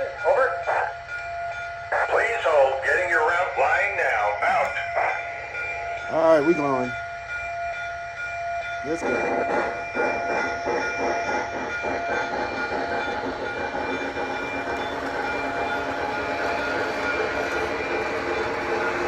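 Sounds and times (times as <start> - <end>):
steam chuffing: 8.8 - 19.0
wheels running on track: 8.8 - 19.0.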